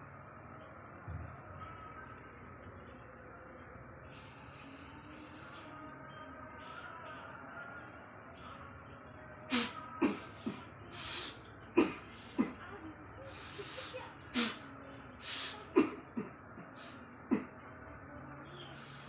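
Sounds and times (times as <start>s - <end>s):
woman coughing: 9.6s - 10.7s, 11.8s - 12.8s, 15.4s - 17.6s.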